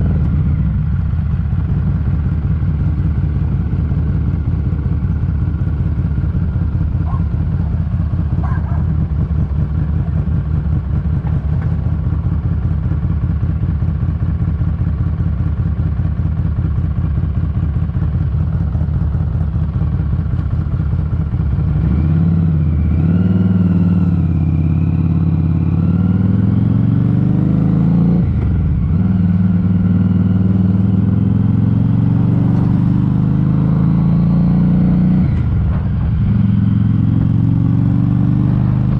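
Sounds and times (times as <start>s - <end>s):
motorcycle engine idling: 0.0s - 22.6s
motorcycle pulling away: 19.6s - 38.9s.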